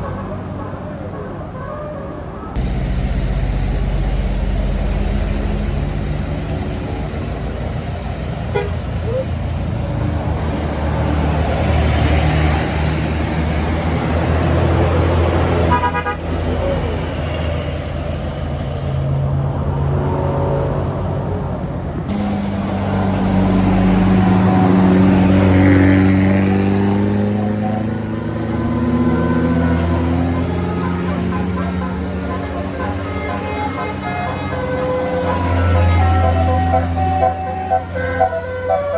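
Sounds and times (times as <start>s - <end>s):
bus horn toot: 0.0s - 1.0s, 8.4s - 9.0s, 15.3s - 17.1s, 22.1s - 38.9s
diesel bus engines running: 0.0s - 38.9s
deep pitched drone: 2.5s - 8.2s, 22.1s - 38.4s.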